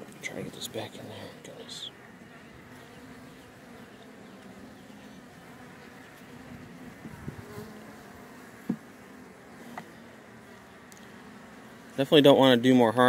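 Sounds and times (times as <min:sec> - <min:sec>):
honeybees buzzing: 0:00.0 - 0:13.0
knocks on hive: 0:08.6 - 0:08.9.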